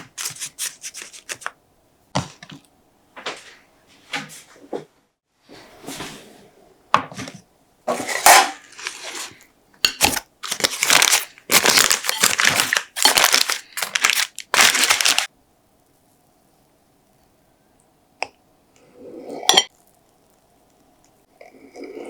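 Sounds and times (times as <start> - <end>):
paper crumpling: 0.0 - 1.5, 10.1 - 15.3.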